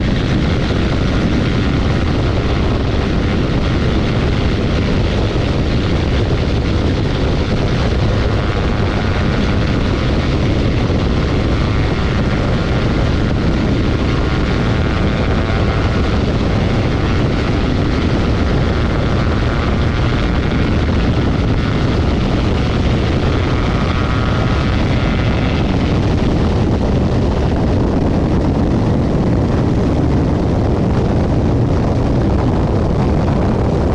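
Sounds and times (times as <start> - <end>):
aircraft engine and propeller: 0.0 - 33.9
faint high whine: 0.0 - 33.9
rush of airflow: 0.0 - 33.9.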